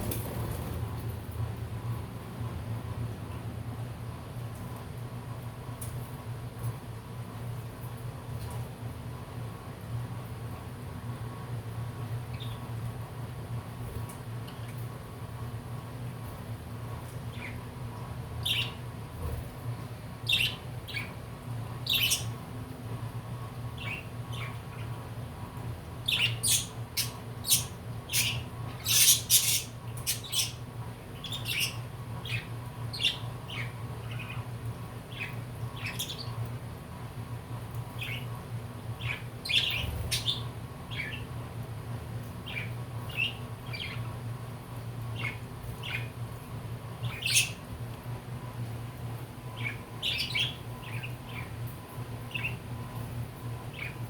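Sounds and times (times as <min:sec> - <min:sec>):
steady low hum: 0:00.0 - 0:54.0
budgerigars chirping and squawking: 0:18.4 - 0:18.8, 0:20.3 - 0:21.1, 0:21.9 - 0:22.4, 0:26.0 - 0:30.6, 0:31.2 - 0:34.5, 0:39.0 - 0:41.3, 0:42.5 - 0:44.1, 0:47.0 - 0:47.6, 0:49.6 - 0:51.6, 0:52.3 - 0:52.6.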